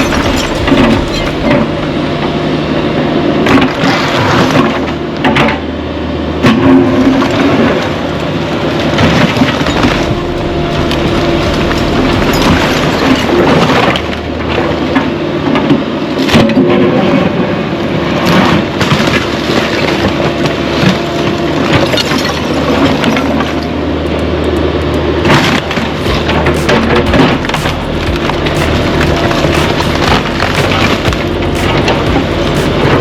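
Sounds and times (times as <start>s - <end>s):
excavator diesel engine running: 0.0s - 4.3s, 9.6s - 14.9s, 22.4s - 33.0s.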